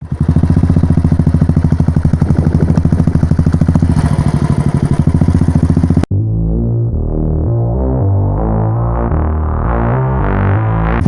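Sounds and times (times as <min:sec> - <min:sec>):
motorcycle engine idling: 0:00.0 - 0:06.1.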